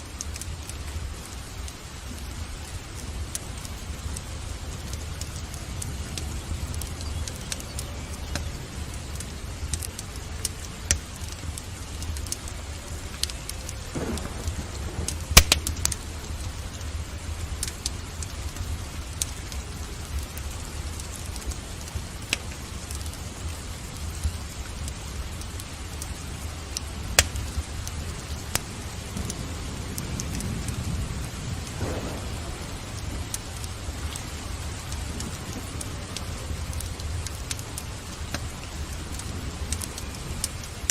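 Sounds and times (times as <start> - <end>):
steady rain: 0.0 - 40.9
thunder rumbles: 0.0 - 40.9
wood fire crackling: 0.0 - 40.9.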